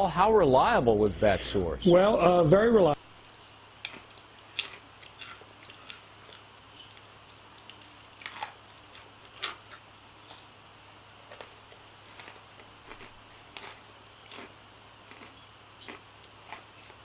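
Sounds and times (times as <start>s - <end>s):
faint clicks and crunches: 11.2s - 17.0s.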